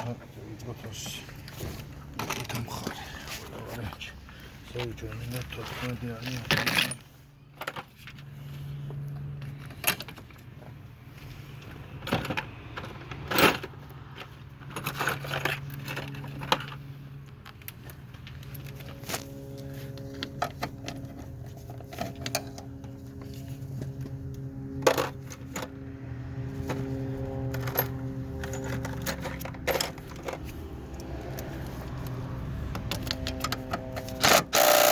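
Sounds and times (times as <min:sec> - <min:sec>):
metal tools and bolts clinking: 0:05.7 - 0:07.8, 0:14.6 - 0:16.8, 0:26.6 - 0:31.5
steady low hum: 0:15.7 - 0:34.9.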